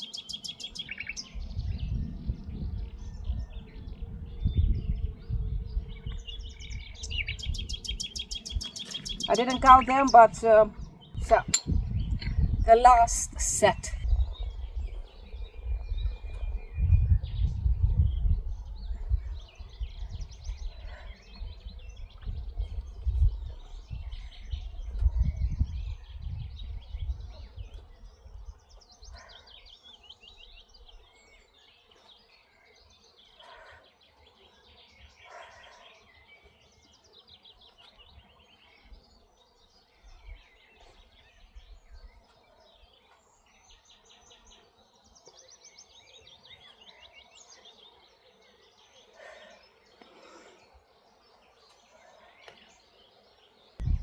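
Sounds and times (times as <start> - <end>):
wind buffeting microphone: 0.0 - 31.1, 40.0 - 42.3, 53.8 - 54.0
birds chirping and singing: 0.0 - 54.0.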